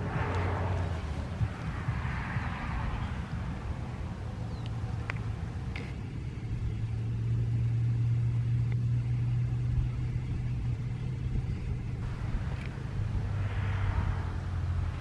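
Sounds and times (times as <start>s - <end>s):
low rumble: 0.0s - 15.0s.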